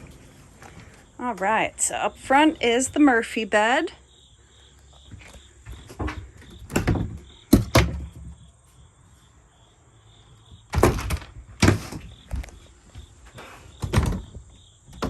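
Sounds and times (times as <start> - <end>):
knocks and thumps of doors: 5.6 - 8.5, 10.5 - 12.5, 13.7 - 15.0.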